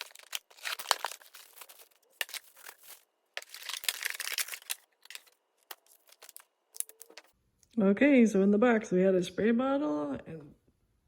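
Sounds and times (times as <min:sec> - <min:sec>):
packing material crinkling and tearing: 0:00.0 - 0:07.3.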